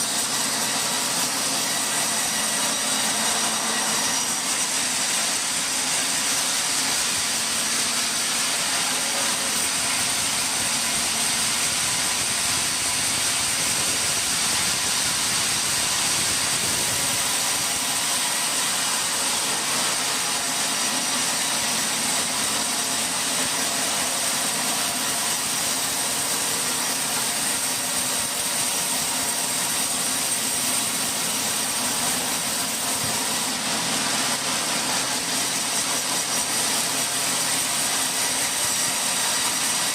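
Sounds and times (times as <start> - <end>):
sawmill machinery running: 0.0 - 39.9
high mechanical whine: 8.5 - 18.4.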